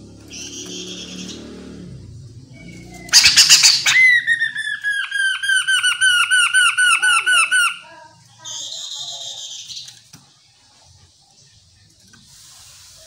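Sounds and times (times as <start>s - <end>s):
bird harsh scratchy call: 0.3s - 1.6s, 2.6s - 9.9s
bird repeated down-slurred whistles: 2.5s - 7.8s, 8.4s - 9.9s.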